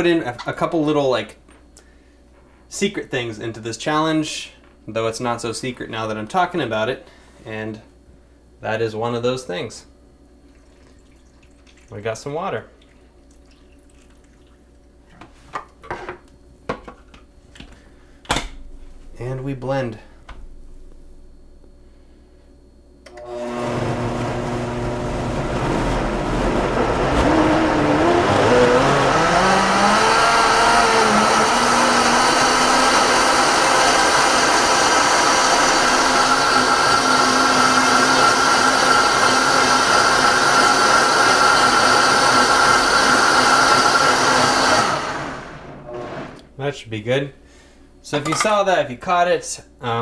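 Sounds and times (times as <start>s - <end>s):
blender motor running: 23.1s - 46.4s.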